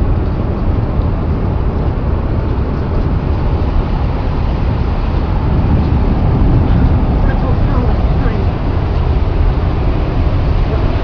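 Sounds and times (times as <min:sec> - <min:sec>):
tornado wind roaring: 0:00.0 - 0:11.0.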